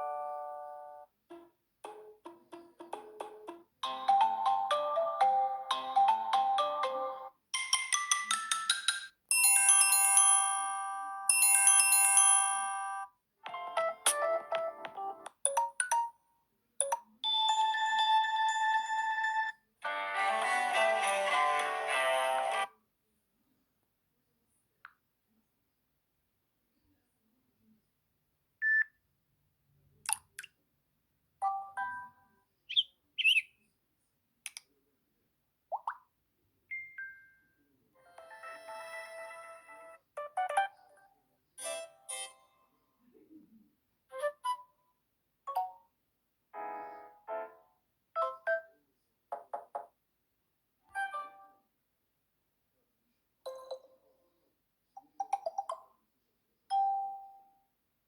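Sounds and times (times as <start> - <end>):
bird-like electronic chirps: 32.7 - 33.6.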